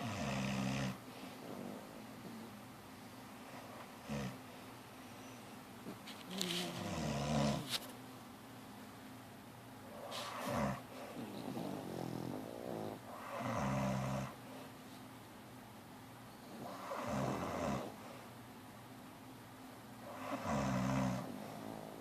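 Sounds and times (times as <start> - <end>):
soft rattling snore: 10.0 - 14.3
people snoring: 10.1 - 14.4, 20.1 - 22.0.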